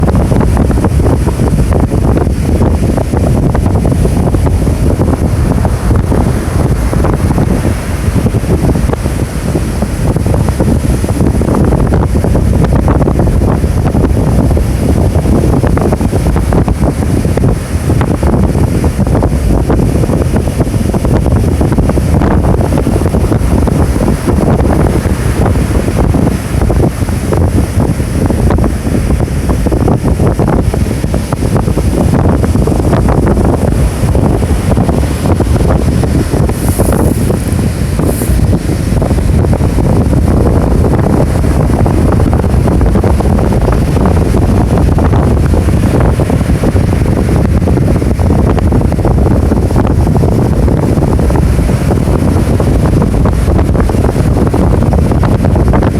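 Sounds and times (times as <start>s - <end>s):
wind buffeting microphone: 0.0s - 55.9s
ocean surf breaking: 4.5s - 11.2s, 21.9s - 29.0s.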